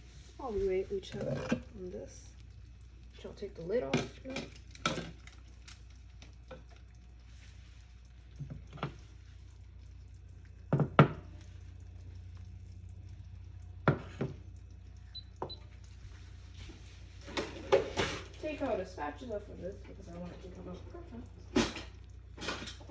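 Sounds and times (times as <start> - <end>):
steady low hum: 0.0 - 22.9
pan and utensils clattering: 17.2 - 18.6, 21.5 - 22.9.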